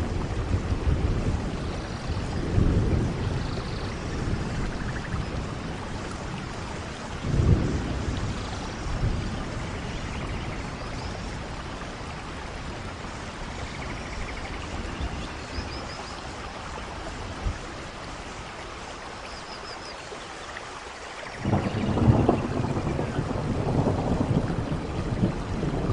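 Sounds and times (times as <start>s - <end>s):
distant thunder rumbles: 0.0s - 15.9s, 21.3s - 25.9s
rain falling through forest: 0.0s - 25.9s.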